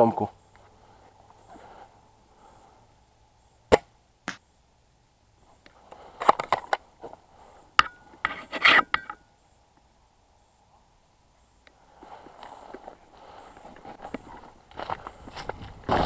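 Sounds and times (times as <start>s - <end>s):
airsoft rifle firing snap: 3.7s - 4.4s
rifle bolt clicks and scrapes: 7.8s - 9.2s.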